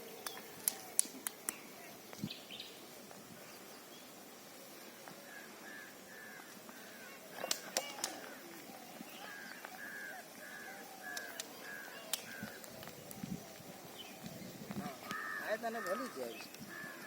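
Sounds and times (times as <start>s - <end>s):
sharp clicks: 0.2s - 1.6s, 7.4s - 8.3s, 11.0s - 13.7s
bird calling: 5.1s - 17.0s.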